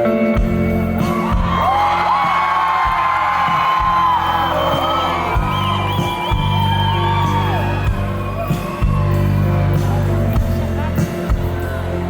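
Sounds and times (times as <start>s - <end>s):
deep bass: 0.0s - 12.0s.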